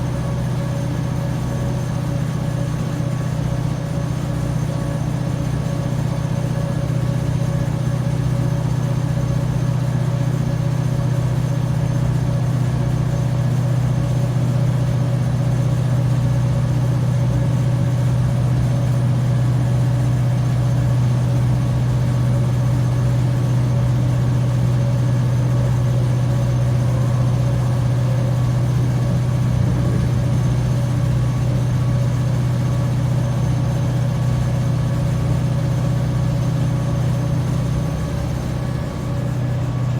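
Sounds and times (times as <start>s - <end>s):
train diesel engines droning: 25.6s - 39.9s.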